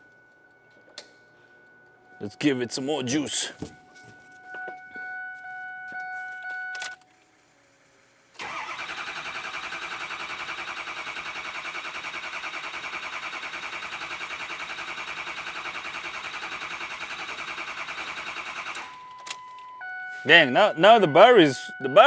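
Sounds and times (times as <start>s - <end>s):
diesel engine cranking by starter: 8.4s - 19.4s.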